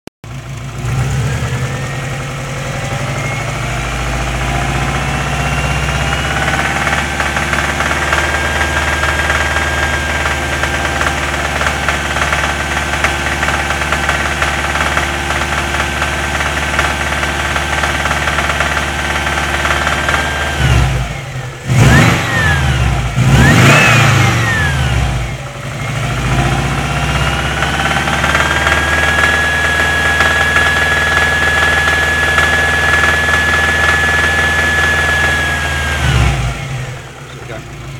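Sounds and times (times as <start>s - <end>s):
engine rev blips: 0.7s - 13.1s, 19.2s - 37.2s
car engine running with knock: 6.4s - 37.9s.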